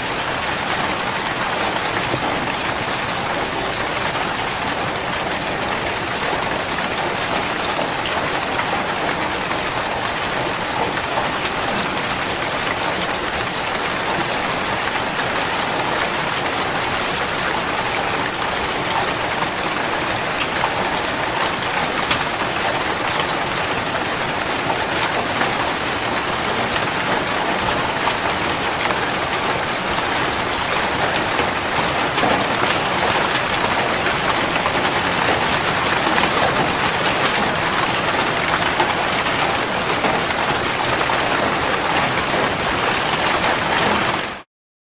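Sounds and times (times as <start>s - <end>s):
steady rain falling: 0.0s - 44.5s.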